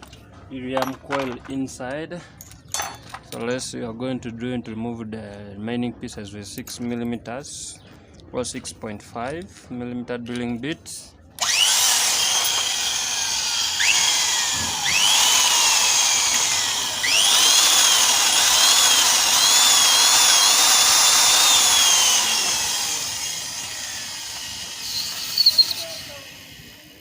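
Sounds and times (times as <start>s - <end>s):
electric drill whining: 11.4s - 27.0s.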